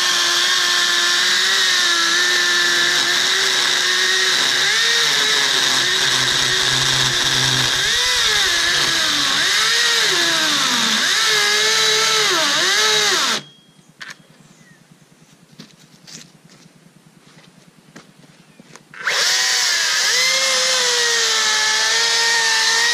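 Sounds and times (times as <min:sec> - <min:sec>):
electric chainsaw cutting log: 0:00.0 - 0:13.4, 0:19.0 - 0:22.9.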